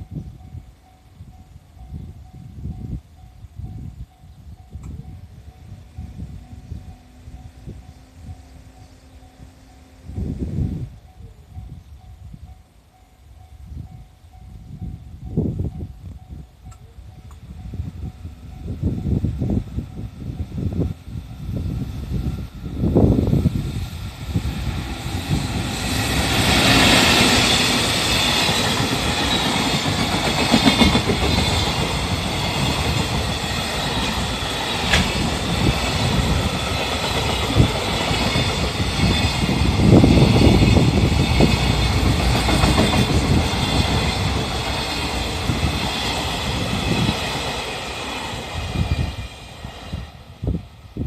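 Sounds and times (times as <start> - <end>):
train wheels clacking on rails: 24.4 - 49.7.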